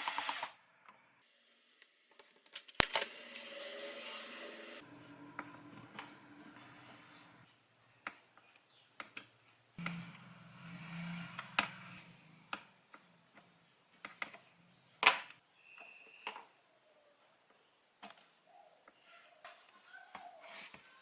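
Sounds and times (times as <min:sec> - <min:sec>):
small parts and tools clicking: 0:00.0 - 0:00.5
low hum: 0:03.2 - 0:07.5.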